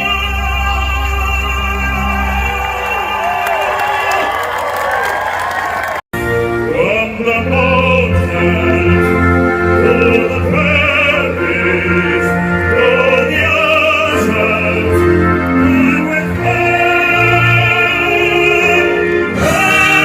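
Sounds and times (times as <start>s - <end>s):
operatic singing: 0.0s - 4.4s, 6.2s - 20.0s
orchestra playing low chords: 6.2s - 20.0s.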